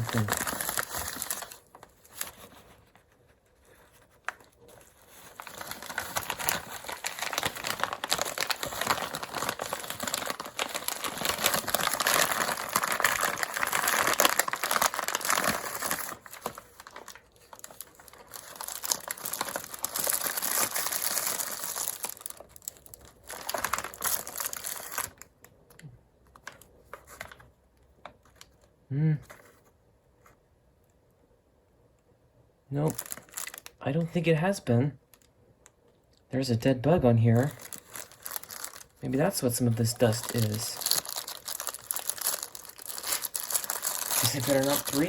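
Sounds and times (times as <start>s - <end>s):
plastic bag crinkling: 0.0s - 25.3s, 32.8s - 33.9s, 37.2s - 45.0s.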